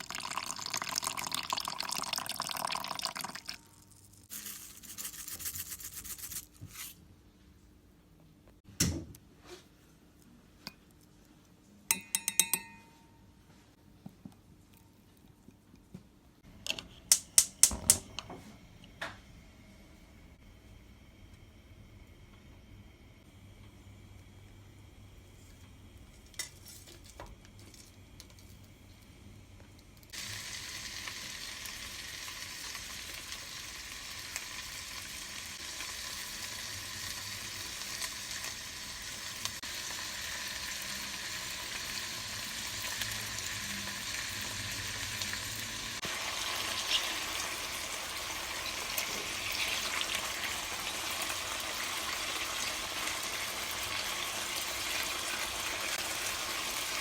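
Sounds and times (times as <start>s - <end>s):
food sizzling in hot oil: 30.1s - 57.0s.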